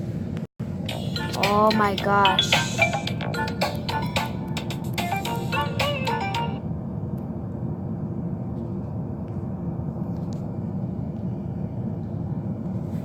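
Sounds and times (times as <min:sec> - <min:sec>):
steady low rumble: 0:00.0 - 0:13.0
music with percussive clicks: 0:00.9 - 0:06.5.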